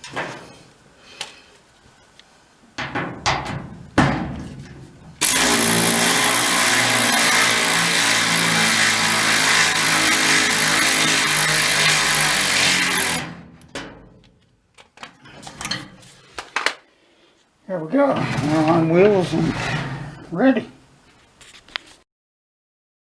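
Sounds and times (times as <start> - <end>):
power drill running: 5.2 - 13.4.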